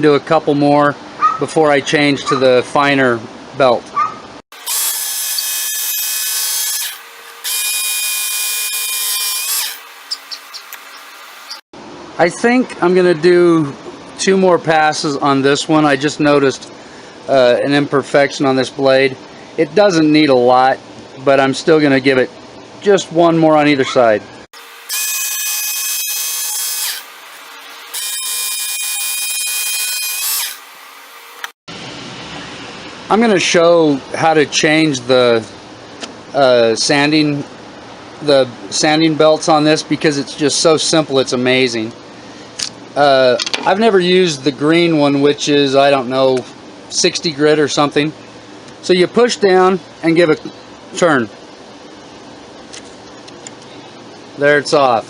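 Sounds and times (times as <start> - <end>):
knife sharpener motor whining: 4.6 - 11.6, 24.6 - 31.5.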